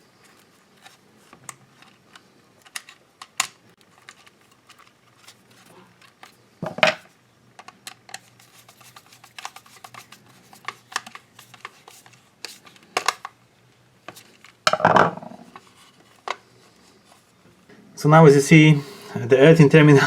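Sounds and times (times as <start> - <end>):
handling noise: 0.1 - 7.1, 14.1 - 17.3.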